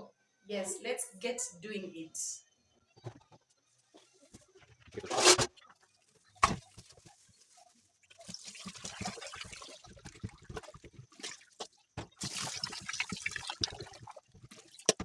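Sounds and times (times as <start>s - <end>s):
water running and splashing: 8.1s - 15.0s.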